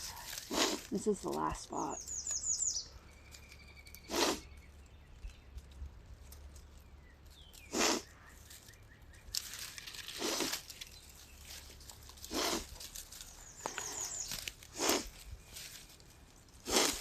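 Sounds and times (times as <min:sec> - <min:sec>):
nose sniffing: 0:00.0 - 0:00.9, 0:04.1 - 0:04.5, 0:07.7 - 0:08.1, 0:10.2 - 0:10.5, 0:12.3 - 0:12.7, 0:13.7 - 0:15.2, 0:16.6 - 0:17.0
faint rustling: 0:04.5 - 0:17.0.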